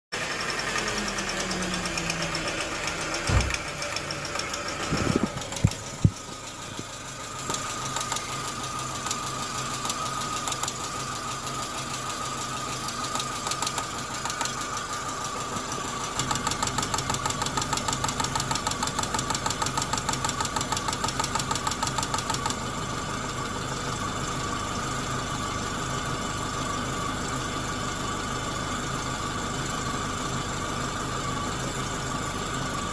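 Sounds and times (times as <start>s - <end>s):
car engine idling: 0.2s - 32.9s
rhythmic engine ticking knock: 1.1s - 22.6s
loud thumps: 3.2s - 3.7s.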